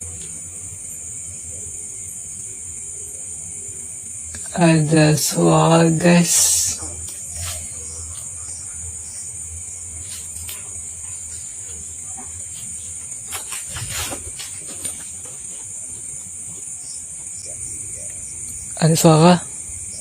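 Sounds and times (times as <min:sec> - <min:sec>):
crickets chirping: 0:00.0 - 0:20.0
soft rustles: 0:10.0 - 0:16.7.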